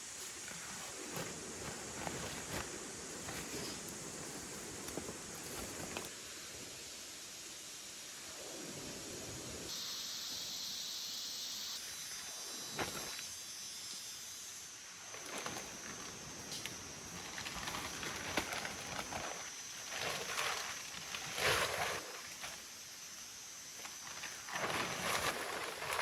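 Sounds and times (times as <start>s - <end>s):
constant hiss: 0.0s - 26.0s
high-pitched insect drone: 9.7s - 26.0s.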